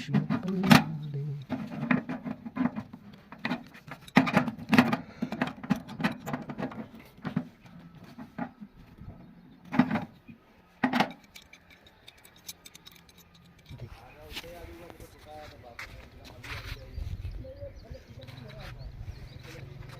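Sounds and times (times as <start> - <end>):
small hard objects clicking: 11.1 - 13.8.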